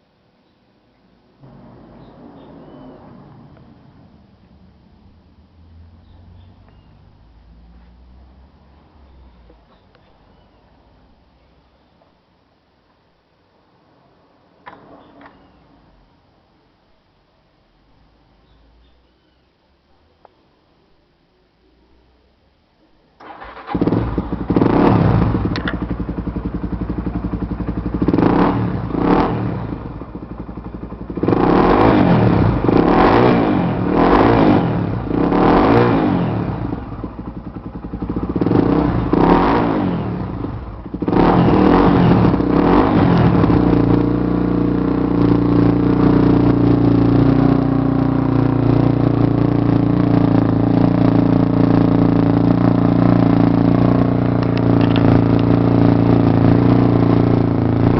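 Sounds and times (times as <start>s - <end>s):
motorcycle engine revving: 23.2s - 57.9s.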